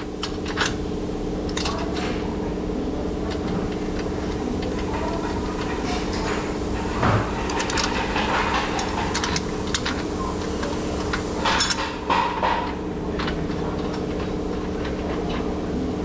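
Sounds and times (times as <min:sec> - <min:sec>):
steady background hum: 0:00.0 - 0:16.0
metal clatter: 0:04.7 - 0:15.4.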